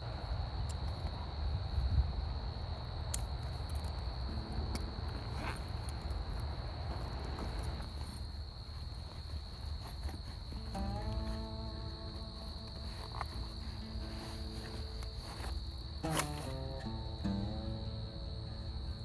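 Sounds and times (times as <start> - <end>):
crickets trilling: 0.0 - 19.0
low pitched hum: 4.3 - 7.8, 10.6 - 19.0.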